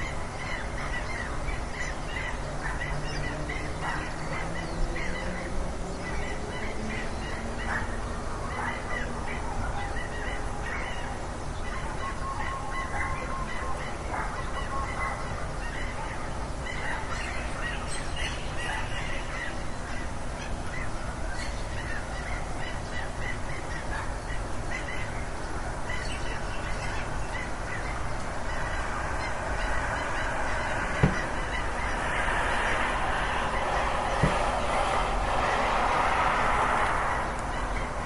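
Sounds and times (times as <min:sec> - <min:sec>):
steady background hiss: 0:00.0 - 0:38.0
geese honking: 0:25.7 - 0:35.6.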